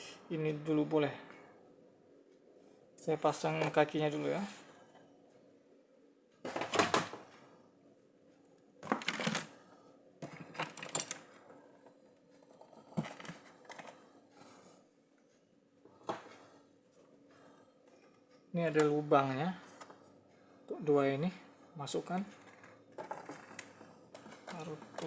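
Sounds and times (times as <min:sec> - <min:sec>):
plastic and metal parts clattering: 0:06.5 - 0:07.3, 0:08.8 - 0:09.6, 0:10.2 - 0:11.4, 0:12.9 - 0:14.0, 0:22.2 - 0:25.0.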